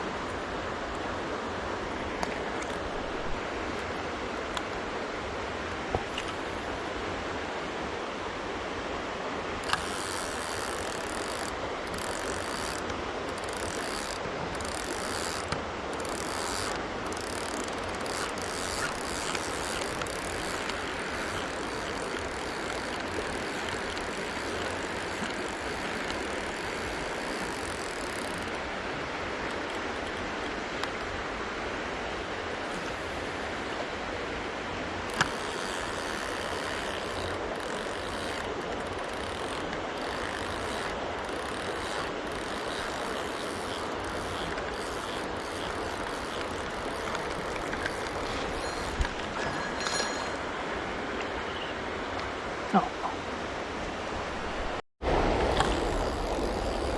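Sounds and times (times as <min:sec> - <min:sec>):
mountain stream rushing: 0:00.0 - 0:56.9
fishing reel ratcheting whir: 0:09.6 - 0:28.6, 0:35.1 - 0:50.4, 0:55.5 - 0:56.9.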